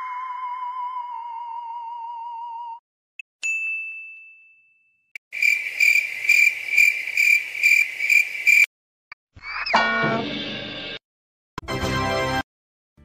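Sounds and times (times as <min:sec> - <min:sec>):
cricket chirping: 0:05.4 - 0:08.7.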